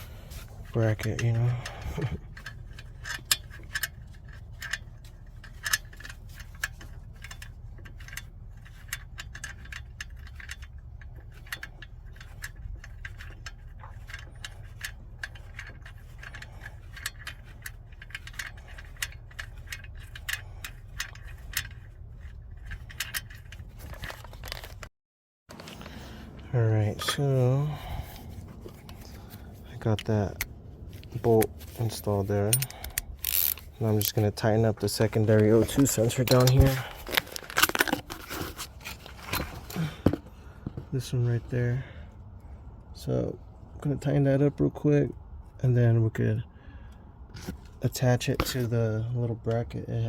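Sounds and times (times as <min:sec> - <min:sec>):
steady low hum: 0:00.0 - 0:24.9, 0:25.5 - 0:50.0.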